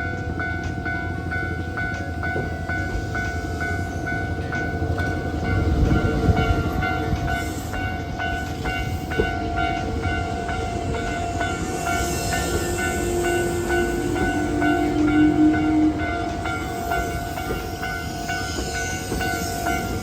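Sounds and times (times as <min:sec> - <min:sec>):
crossing warning bell ringing: 0:00.0 - 0:20.0
train rumbling over crossing: 0:00.0 - 0:20.0
hiss: 0:06.7 - 0:09.3, 0:10.5 - 0:15.2, 0:16.5 - 0:20.0.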